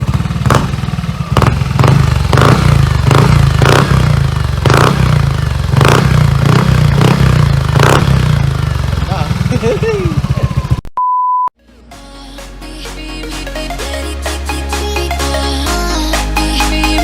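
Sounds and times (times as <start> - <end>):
scooter engine with throttle blips: 0.0 - 10.9.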